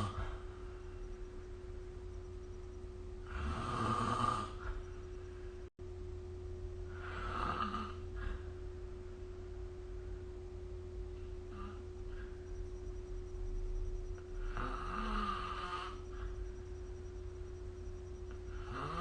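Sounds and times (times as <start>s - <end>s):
steady low hum: 0.0s - 19.0s
person snoring: 3.2s - 4.8s, 6.9s - 8.4s, 14.4s - 16.1s, 18.5s - 19.0s.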